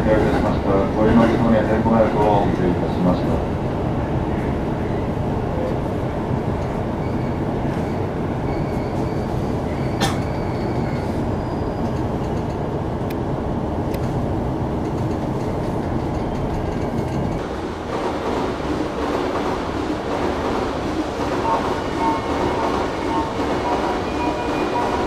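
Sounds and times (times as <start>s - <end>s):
train wheels rumbling on rails: 0.0s - 25.0s
faint high squeal: 7.0s - 11.9s.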